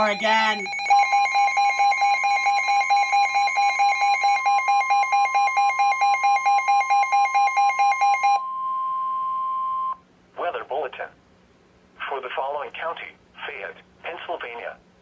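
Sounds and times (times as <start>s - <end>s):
fast electronic beeping: 0.0s - 1.1s
steady warning tone: 0.0s - 6.2s.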